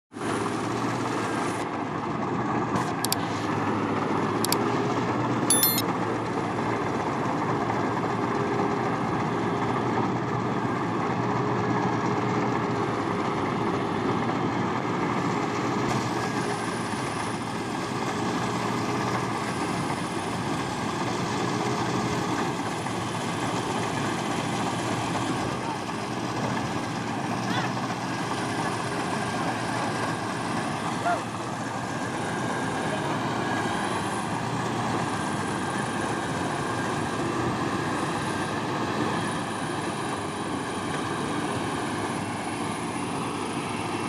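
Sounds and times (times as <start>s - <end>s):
farm machine engine running: 0.2s - 44.0s
sharp high clinks: 5.5s - 5.8s.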